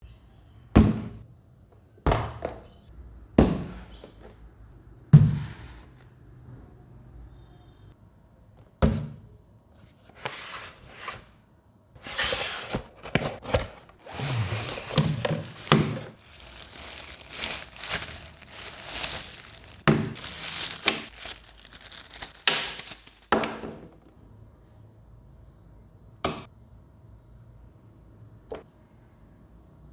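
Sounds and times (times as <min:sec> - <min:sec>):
wrapping rustling and tearing: 0:13.4 - 0:23.4.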